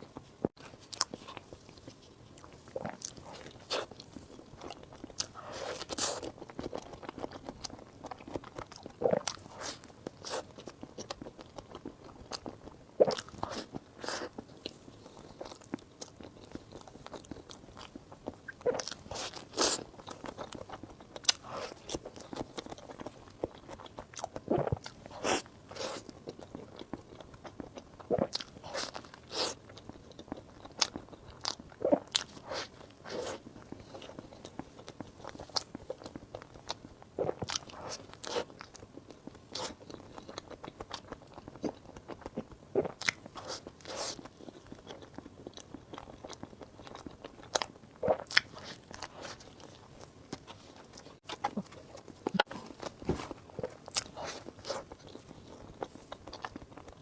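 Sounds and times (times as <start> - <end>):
person biting and chewing food: 46.2 - 57.0
wet mouth sounds: 50.4 - 55.0.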